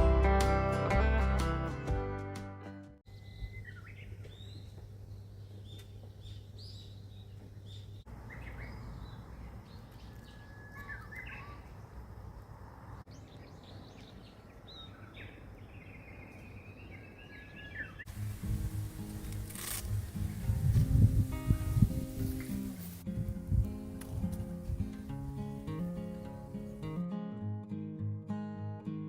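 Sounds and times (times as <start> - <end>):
low outdoor background rumble: 3.1 - 21.3
small birds chirping: 3.1 - 23.0.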